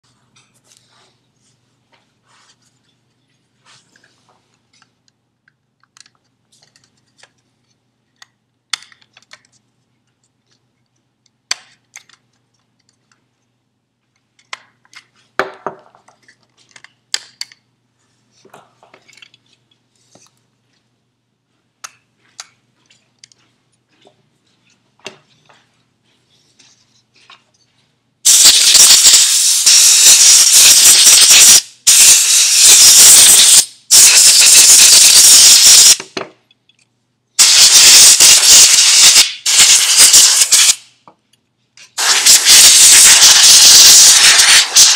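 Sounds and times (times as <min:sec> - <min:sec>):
compressed air hissing: 0:28.3 - 0:36.0, 0:37.4 - 0:40.8, 0:42.0 - 0:44.9.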